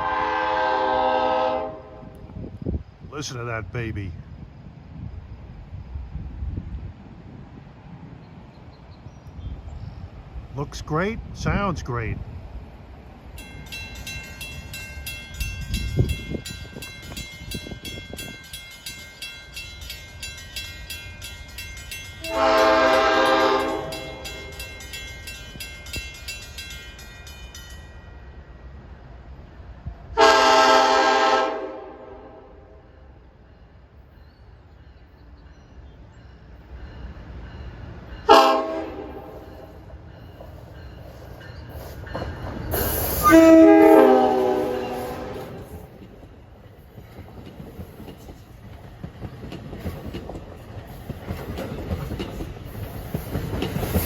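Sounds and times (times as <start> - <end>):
locomotive air horn blasts: 0.0 - 2.1, 22.2 - 24.2, 30.2 - 32.8, 38.3 - 39.4, 43.1 - 45.7
high ringing: 13.4 - 28.8.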